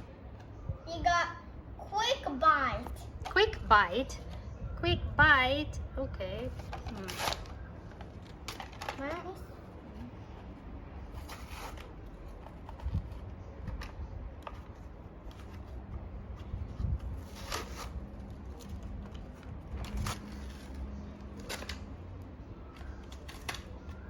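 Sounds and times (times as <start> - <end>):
plastic packaging crackling: 6.5 - 9.4, 14.7 - 24.0.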